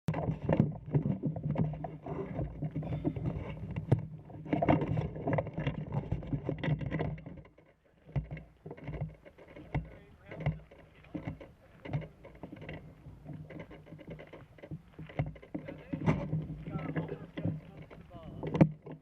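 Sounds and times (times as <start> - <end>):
handling knocks and rustling: 0.1 - 19.0.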